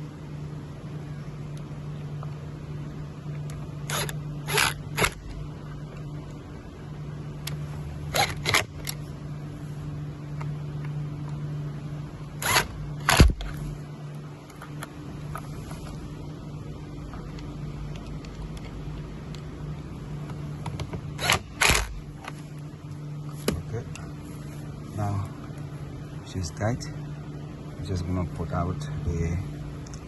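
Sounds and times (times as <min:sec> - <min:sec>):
zip ties ratcheting tight: 0:03.8 - 0:05.2.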